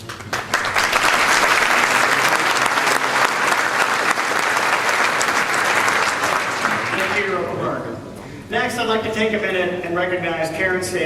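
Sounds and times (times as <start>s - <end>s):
large audience applauding: 0.0s - 7.5s.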